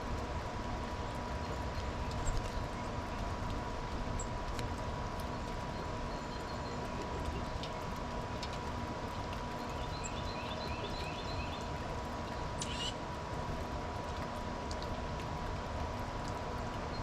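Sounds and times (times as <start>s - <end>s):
light ticks and clicks: 0.0s - 17.0s
songbirds calling: 5.2s - 8.0s, 9.4s - 13.2s.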